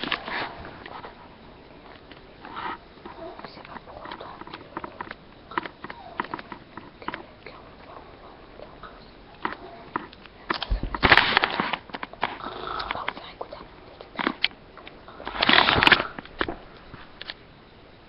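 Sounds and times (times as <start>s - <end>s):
small clicks: 3.0s - 8.0s
snoring and snuffling: 12.4s - 13.0s.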